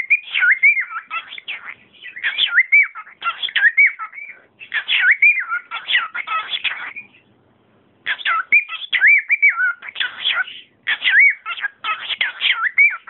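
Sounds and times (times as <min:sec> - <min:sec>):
cockatiel chattering and whistling: 0:00.0 - 0:07.2, 0:08.1 - 0:13.0.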